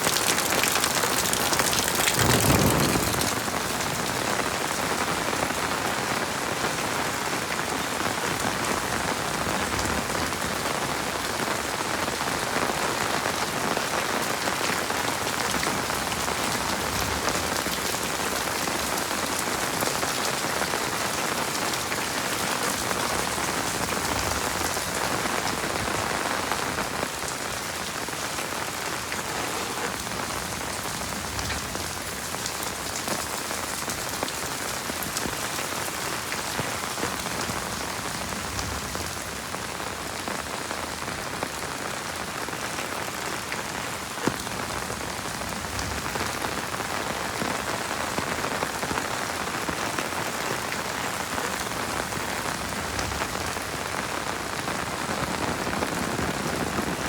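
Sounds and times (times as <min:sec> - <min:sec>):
heavy rain falling: 0:00.0 - 0:57.0.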